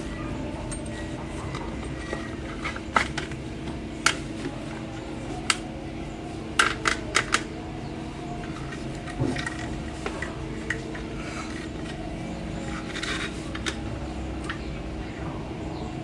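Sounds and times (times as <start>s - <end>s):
steady low hum: 0.0s - 16.0s
sharp clicks of hard parts: 0.7s - 4.5s, 5.4s - 5.7s, 6.5s - 7.5s, 12.6s - 14.7s.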